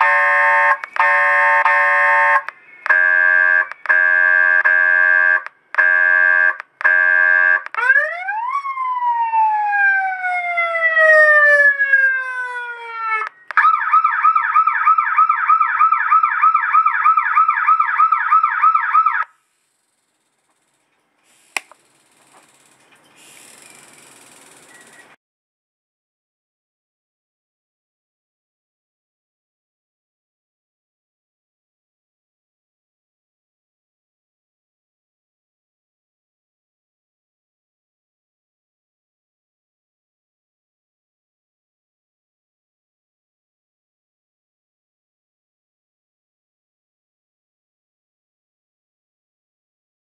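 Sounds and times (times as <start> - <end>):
electronic siren: 0.0 - 19.4
click: 0.8 - 1.0, 21.5 - 21.8.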